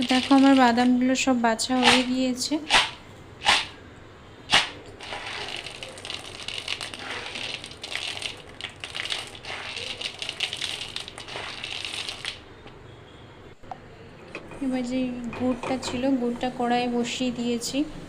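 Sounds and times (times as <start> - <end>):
dry food pieces rattling: 0.0 - 1.0, 5.0 - 12.4
sharp knock: 2.7 - 3.8, 4.5 - 4.8.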